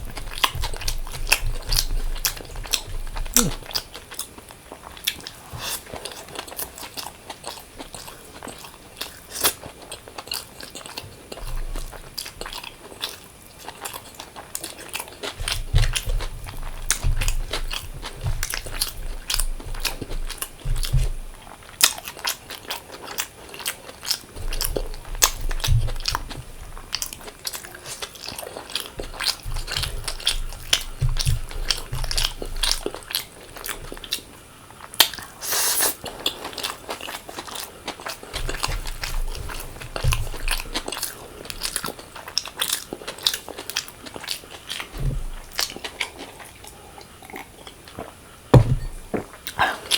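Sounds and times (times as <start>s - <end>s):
mouth clicks and crunches: 0.0s - 4.4s, 5.0s - 34.2s
biting and chewing food: 0.0s - 34.3s, 34.9s - 49.9s.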